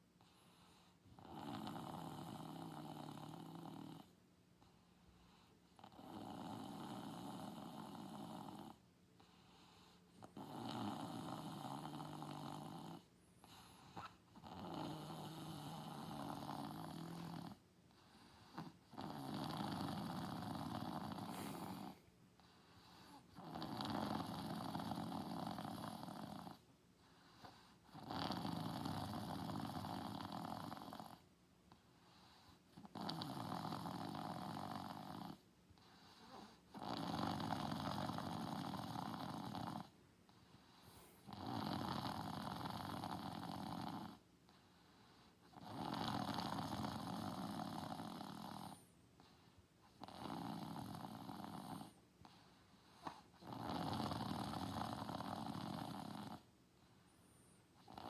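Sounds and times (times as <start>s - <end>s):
person snoring: 14.4s - 17.6s, 18.6s - 22.1s, 53.4s - 56.4s.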